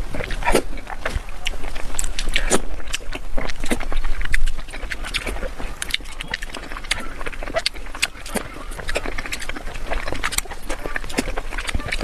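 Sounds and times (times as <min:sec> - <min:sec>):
crunching and chewing: 0:00.0 - 0:12.0.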